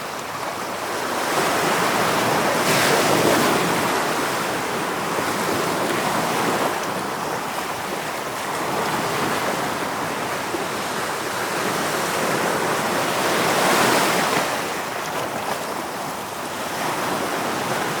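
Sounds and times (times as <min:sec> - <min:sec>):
ocean waves washing ashore: 0:00.0 - 0:18.0.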